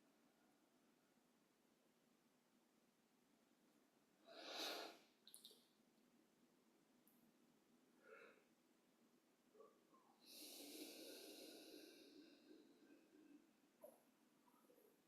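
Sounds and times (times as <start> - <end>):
long out-breath: 10.2 - 13.5.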